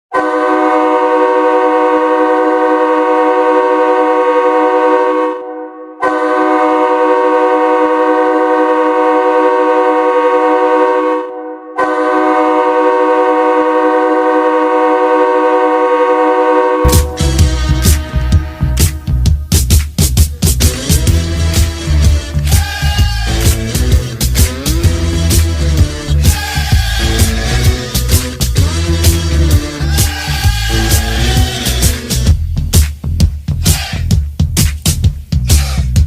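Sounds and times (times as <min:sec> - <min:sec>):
ice hockey goal horn blasts: 0:00.1 - 0:18.8.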